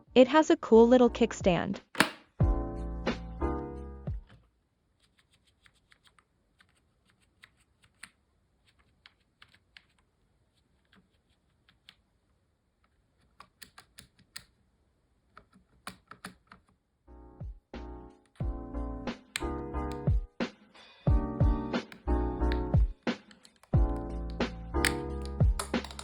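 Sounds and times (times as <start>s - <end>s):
music: 0.0s - 1.8s, 2.4s - 4.3s, 17.1s - 26.0s
keyboard keys clicking: 13.2s - 14.6s, 15.3s - 16.8s, 18.1s - 20.2s, 21.4s - 26.0s.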